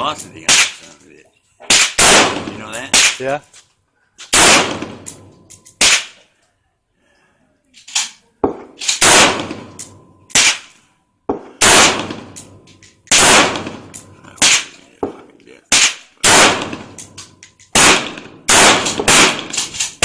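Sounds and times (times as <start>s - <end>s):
rifle gunshots echoing: 1.7s - 3.2s, 4.3s - 6.2s, 8.5s - 10.7s, 11.3s - 20.0s.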